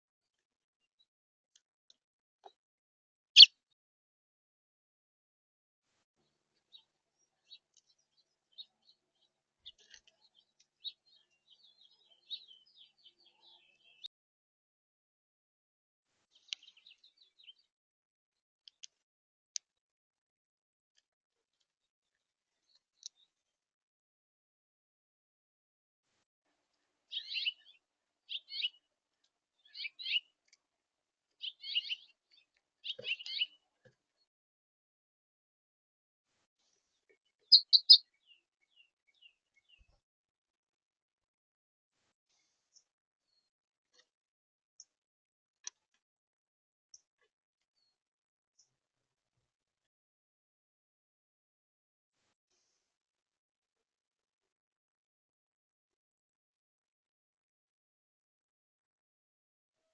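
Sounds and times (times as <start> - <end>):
songbirds chirping: 6.2 - 14.1, 16.3 - 17.7, 26.8 - 30.6, 31.3 - 34.3, 36.8 - 40.0.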